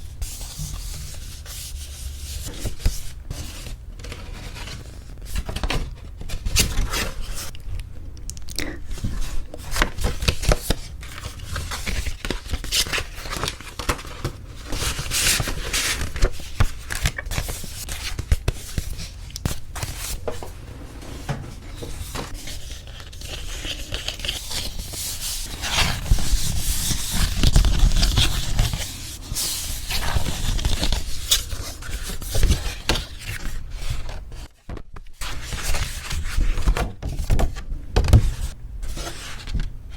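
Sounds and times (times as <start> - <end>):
paper cards rustling: 8.6 - 39.7.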